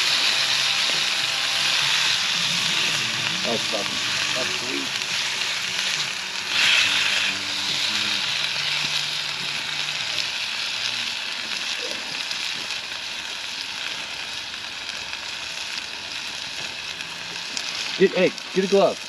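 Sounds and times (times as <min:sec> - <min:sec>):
chicken sizzling in hot fat: 0:00.0 - 0:19.0.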